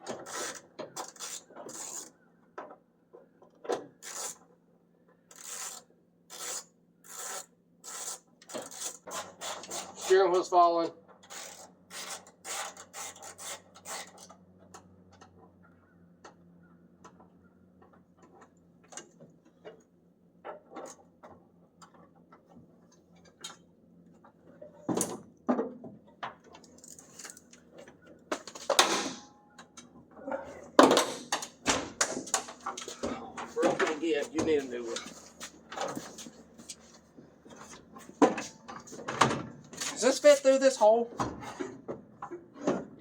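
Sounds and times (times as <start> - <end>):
metal tools clinking and scraping: 26.6 - 27.8, 28.4 - 36.8.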